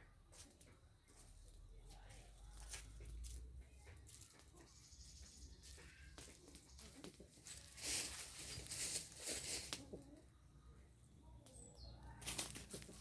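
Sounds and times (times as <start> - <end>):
birds: 0.0 - 13.0
rustling: 6.4 - 10.0, 12.2 - 13.0.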